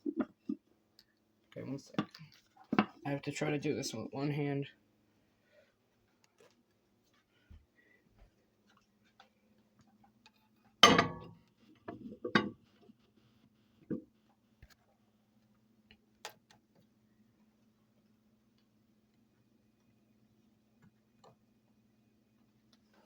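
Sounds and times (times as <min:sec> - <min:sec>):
bowl knocking and clinking: 0:10.8 - 0:11.4.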